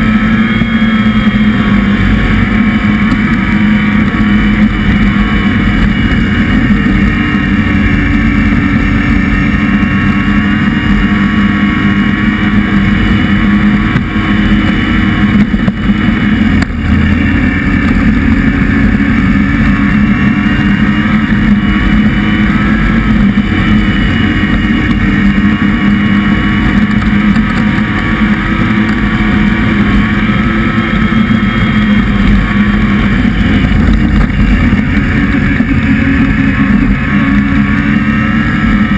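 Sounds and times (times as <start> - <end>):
vehicle engine running: 0.0 - 38.9.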